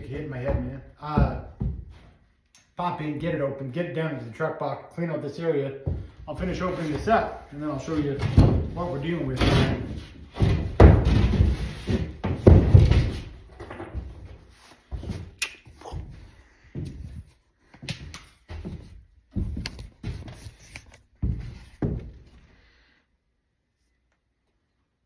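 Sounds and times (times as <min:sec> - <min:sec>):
hollow wooden thuds and knocks: 0:00.0 - 0:02.2, 0:05.8 - 0:17.3, 0:17.9 - 0:20.4, 0:21.2 - 0:22.4.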